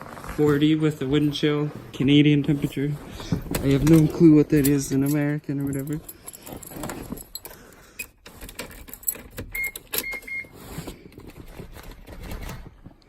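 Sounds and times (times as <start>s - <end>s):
car keys jangling: 3.9s - 10.3s.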